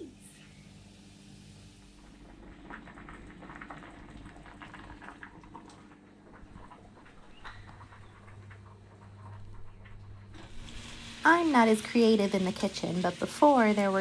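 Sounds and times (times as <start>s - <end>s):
vegetables sizzling in a pan: 10.4s - 14.0s.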